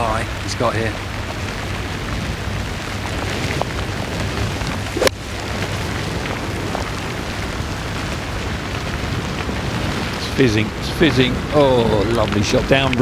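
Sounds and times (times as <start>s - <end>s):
wind and rain: 0.0s - 13.0s
wind rumble on microphone: 0.0s - 13.0s
golf club striking ball: 5.0s - 5.2s.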